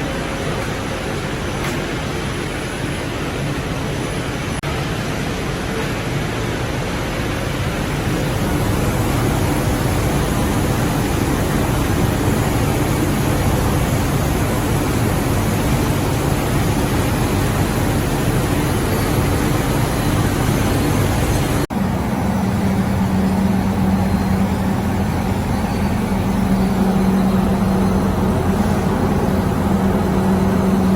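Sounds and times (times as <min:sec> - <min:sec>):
production line machinery running: 0:00.0 - 0:30.9
low hum: 0:07.4 - 0:30.9.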